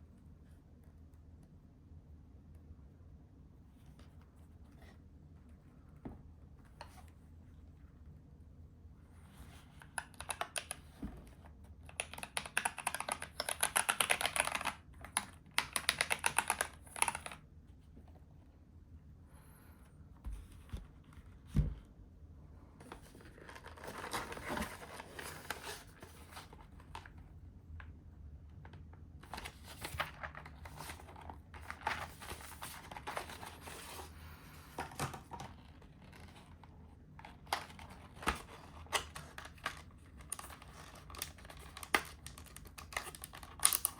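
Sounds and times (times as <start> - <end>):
keyboard keys clicking: 11.9 - 17.4.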